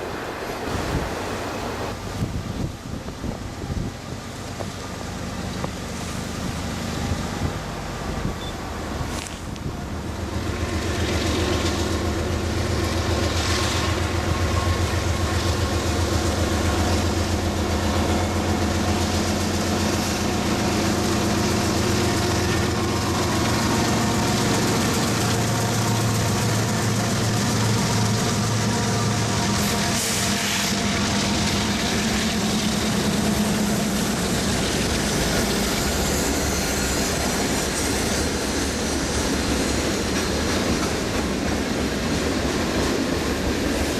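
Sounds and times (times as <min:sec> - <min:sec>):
diesel locomotive engines droning: 0:00.0 - 0:43.9
freight cars rumbling: 0:00.0 - 0:43.9.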